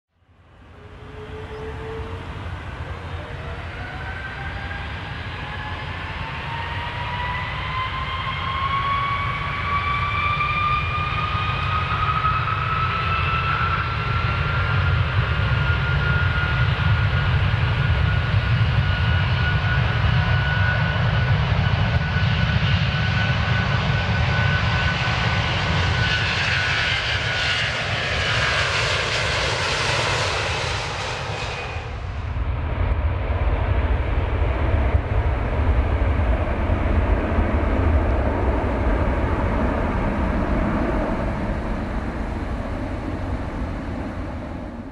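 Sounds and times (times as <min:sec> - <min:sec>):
airplane engines whining: 0:00.2 - 0:44.9
deep continuous rumble: 0:13.9 - 0:44.9.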